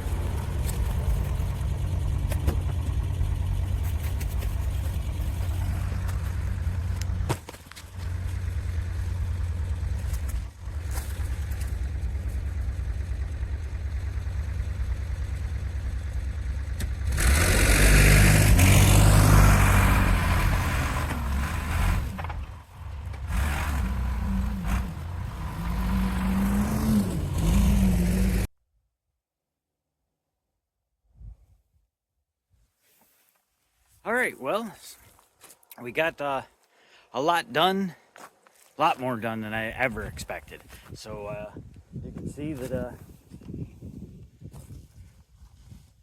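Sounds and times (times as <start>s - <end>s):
excavator diesel engine running: 0.0s - 28.5s.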